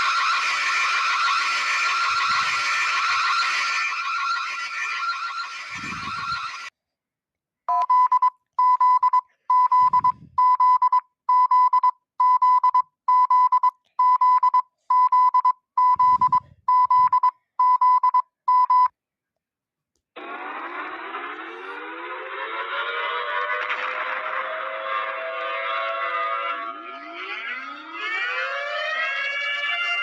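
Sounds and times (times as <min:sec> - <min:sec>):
electronic alarm beeping: 0:00.0 - 0:06.7, 0:07.7 - 0:18.9.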